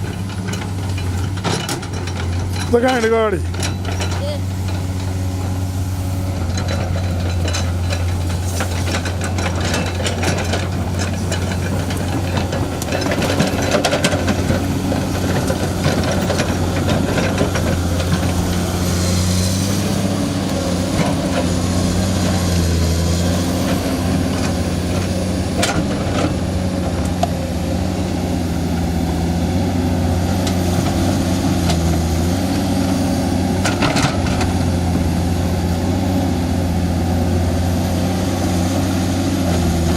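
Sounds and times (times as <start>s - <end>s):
short knocks and clanks: 0.0s - 5.6s, 6.3s - 27.4s
heavy diesel engine running: 0.0s - 39.9s.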